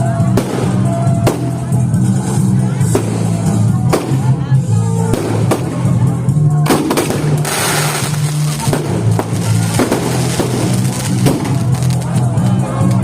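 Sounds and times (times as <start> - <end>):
loud music with beat: 0.0 - 13.0
fireworks bangs and crackling: 0.1 - 13.0.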